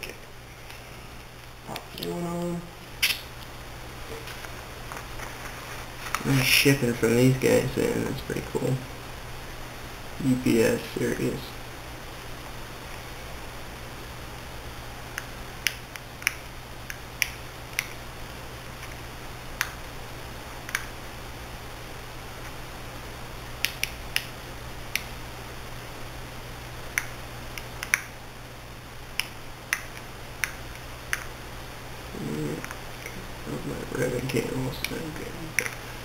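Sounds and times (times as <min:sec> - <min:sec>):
steady low hum: 0:00.0 - 0:36.0
small sharp clicks and taps: 0:15.2 - 0:18.0, 0:20.6 - 0:20.9, 0:23.6 - 0:25.2, 0:26.9 - 0:28.1, 0:29.2 - 0:31.3.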